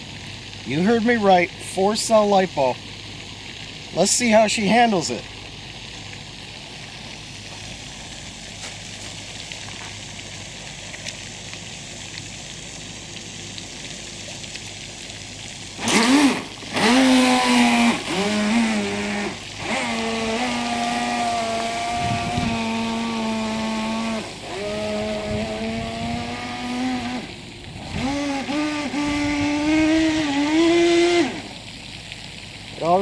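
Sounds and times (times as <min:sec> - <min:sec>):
low outdoor hiss: 0:00.0 - 0:33.0
electric boat motor whining: 0:15.8 - 0:31.6.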